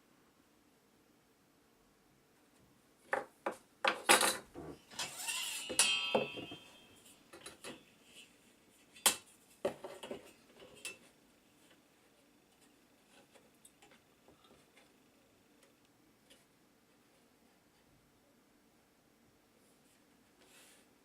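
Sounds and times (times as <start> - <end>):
short metallic ring: 5.0 - 7.2.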